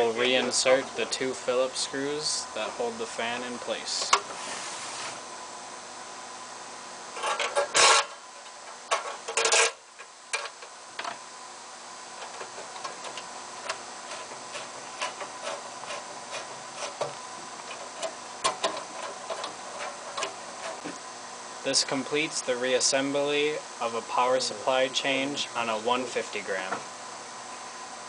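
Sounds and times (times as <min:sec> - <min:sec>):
parts clattering: 0:07.1 - 0:11.2, 0:12.2 - 0:21.0.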